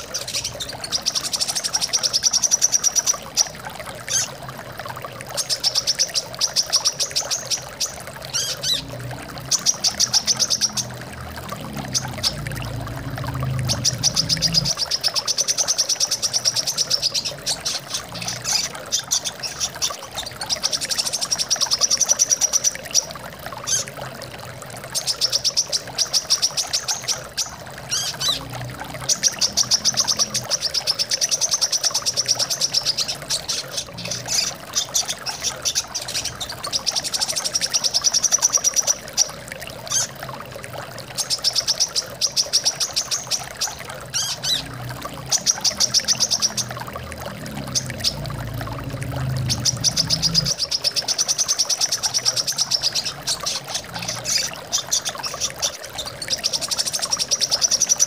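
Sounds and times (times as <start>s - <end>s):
flowing water: 0.0s - 58.0s.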